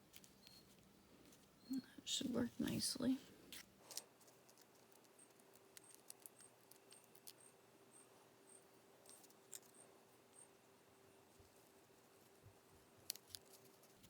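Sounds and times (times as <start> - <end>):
faint steady hum: 0.0 - 14.0
card stock ticks and rustles: 3.5 - 7.6, 9.0 - 10.4, 11.4 - 14.0.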